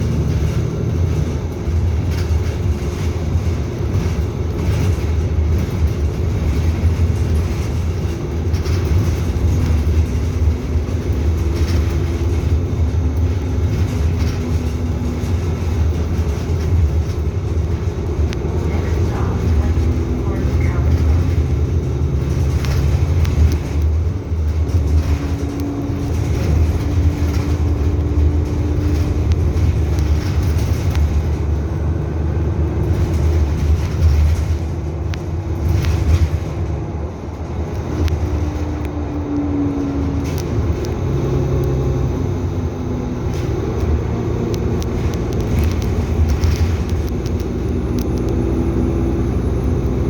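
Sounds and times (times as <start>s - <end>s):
bus engine drone: 0.0s - 50.0s
humming whine: 0.0s - 50.0s.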